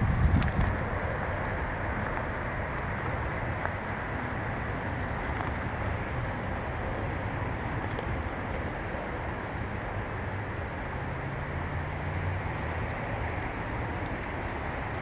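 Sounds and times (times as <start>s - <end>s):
wind gust buffeting microphone: 0.0s - 1.8s
steady wind: 0.0s - 15.0s.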